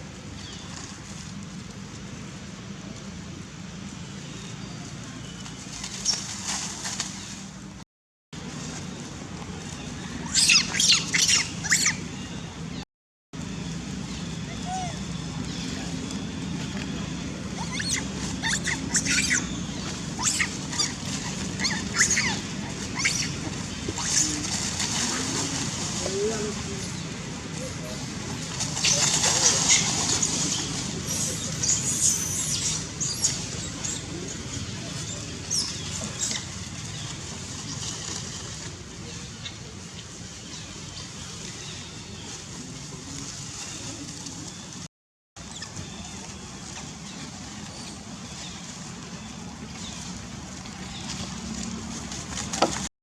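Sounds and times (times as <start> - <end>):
baby monkey shrill squeals: 10.3 - 12.0, 17.6 - 19.5, 20.2 - 20.9, 21.6 - 22.4, 23.0 - 23.3.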